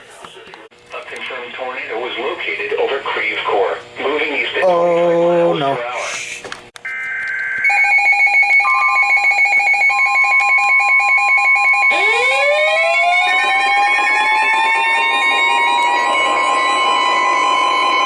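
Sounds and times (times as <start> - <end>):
pulsing electronic alarm: 6.8 - 18.0
warning siren winding up: 6.8 - 18.0.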